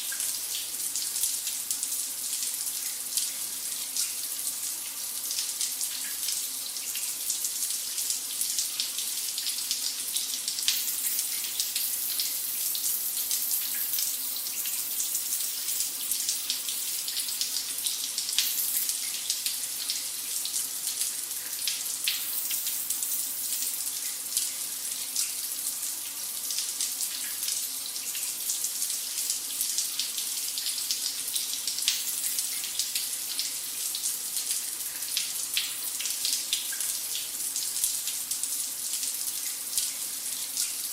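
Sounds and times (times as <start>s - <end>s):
water spattering on a surface: 10.3s - 20.0s, 21.5s - 23.7s
shower spray hissing: 10.6s - 19.2s, 22.0s - 23.8s.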